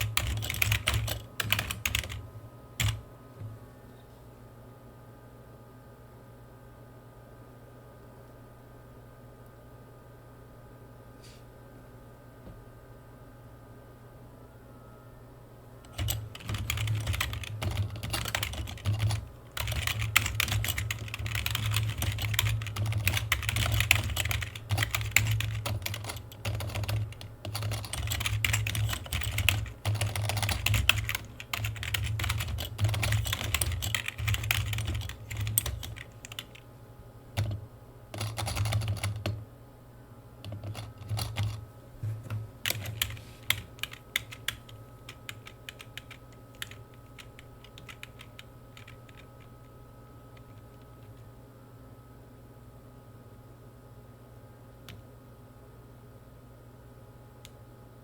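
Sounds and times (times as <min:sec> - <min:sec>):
typing on computer keyboard: 0:00.0 - 0:02.2, 0:02.8 - 0:03.0, 0:15.9 - 0:36.6, 0:37.4 - 0:37.6, 0:38.2 - 0:39.4, 0:40.4 - 0:41.6, 0:42.6 - 0:49.5.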